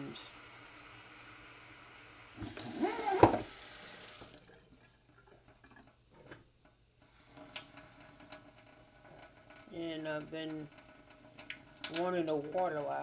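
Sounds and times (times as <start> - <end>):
water pouring into reservoir: 2.3 - 6.0.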